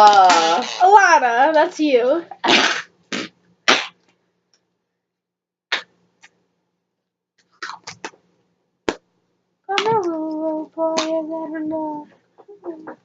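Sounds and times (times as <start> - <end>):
girl singing a long note: 9.7 - 13.0.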